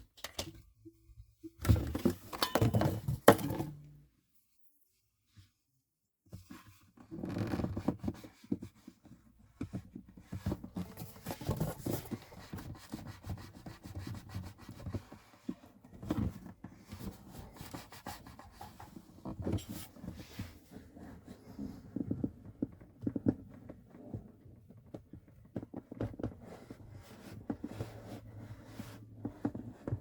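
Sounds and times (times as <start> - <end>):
rubbing on guitar body: 10.6 - 14.9.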